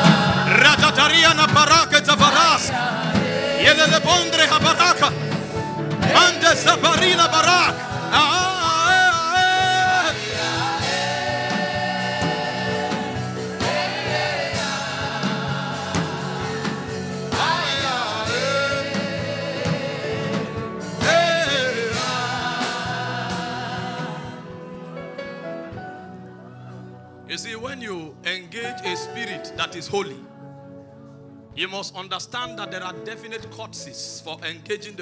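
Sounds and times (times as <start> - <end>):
gospel chant singing: 0.0 - 25.8
instrumental backing: 0.0 - 35.0.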